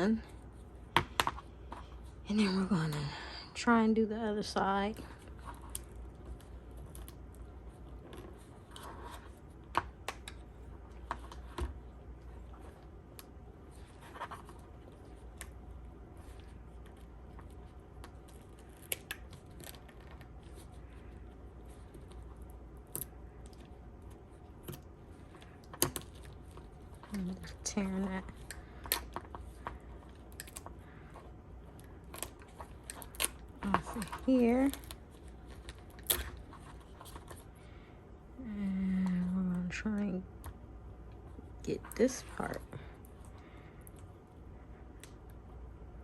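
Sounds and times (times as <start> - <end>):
faint low hum: 0.0 - 46.0
tape peeling off: 16.2 - 27.4.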